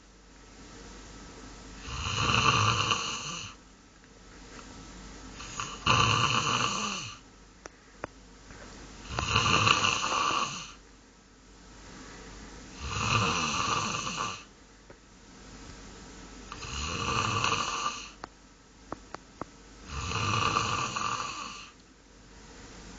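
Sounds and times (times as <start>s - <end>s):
goose snoring: 1.8s - 3.6s, 5.4s - 7.2s, 9.1s - 10.8s, 12.8s - 14.5s, 16.5s - 18.2s, 19.9s - 21.8s.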